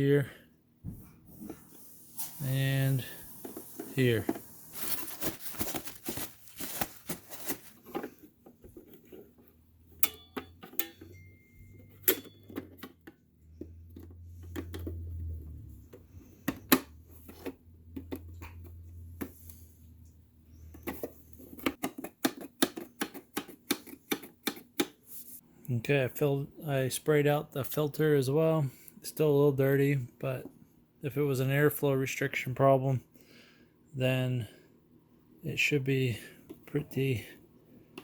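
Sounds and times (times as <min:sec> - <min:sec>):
low steady hum: 0:00.0 - 0:21.8.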